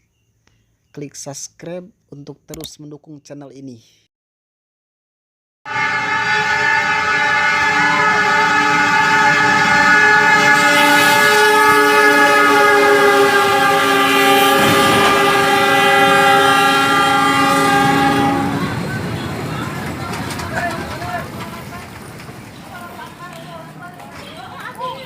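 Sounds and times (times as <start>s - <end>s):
locomotive air horn blast: 5.7s - 19.8s.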